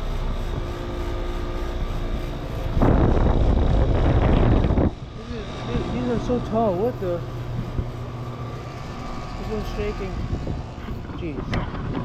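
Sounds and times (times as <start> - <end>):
air conditioner humming: 0.0 - 12.0.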